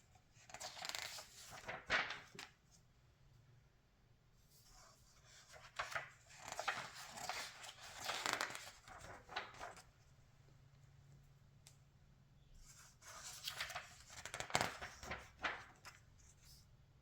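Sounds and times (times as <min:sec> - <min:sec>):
magazine pages turning: 0:00.4 - 0:02.6, 0:05.3 - 0:09.9, 0:12.8 - 0:16.1.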